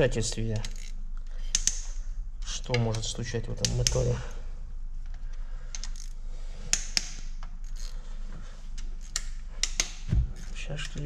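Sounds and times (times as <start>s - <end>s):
steady low hum: 0.0s - 11.0s
ratchet wrench clicking: 0.6s - 1.9s, 5.7s - 8.0s, 8.8s - 11.0s.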